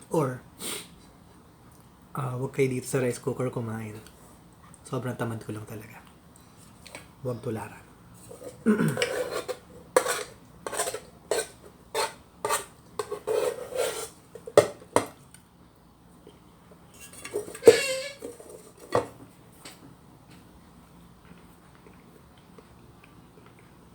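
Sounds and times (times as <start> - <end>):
spoon scraping and clinking on pot: 8.3 - 14.6, 16.9 - 18.8.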